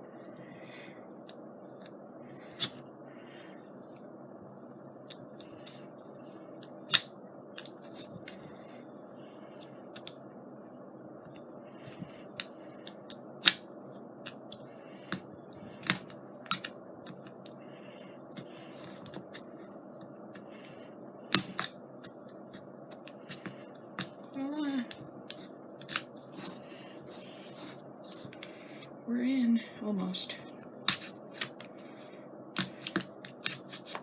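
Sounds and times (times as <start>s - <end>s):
low hum: 0.0s - 34.0s.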